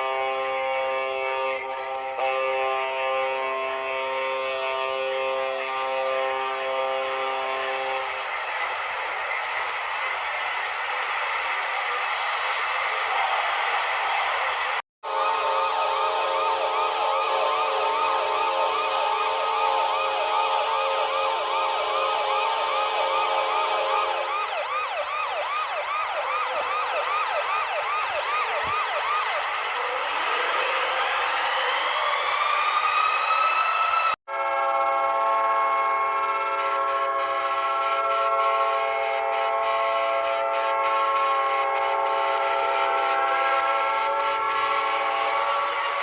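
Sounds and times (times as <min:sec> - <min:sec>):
goal horn chord: 0:00.0 - 0:08.4, 0:34.4 - 0:46.0
yelping siren: 0:00.0 - 0:14.4, 0:15.0 - 0:46.0.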